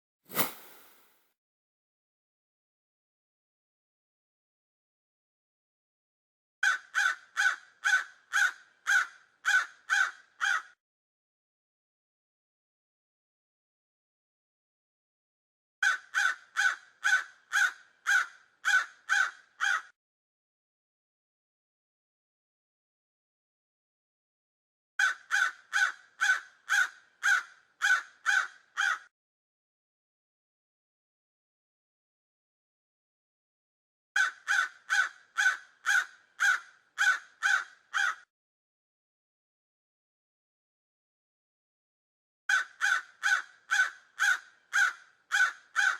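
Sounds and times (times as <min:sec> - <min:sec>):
crow cawing: 0:06.6 - 0:10.8, 0:15.8 - 0:19.9, 0:25.0 - 0:29.1, 0:34.2 - 0:38.3, 0:42.5 - 0:45.9.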